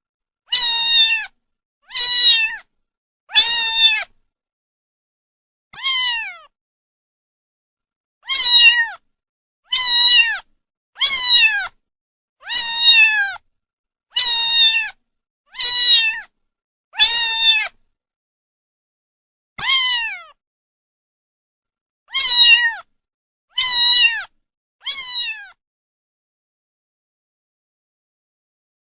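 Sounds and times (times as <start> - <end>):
kitten meowing: 0.5 - 2.7, 3.3 - 4.1, 5.8 - 6.5, 8.2 - 9.0, 9.7 - 11.8, 12.4 - 13.4, 14.2 - 16.3, 17.0 - 17.8, 19.6 - 20.4, 22.1 - 22.9, 23.5 - 25.6.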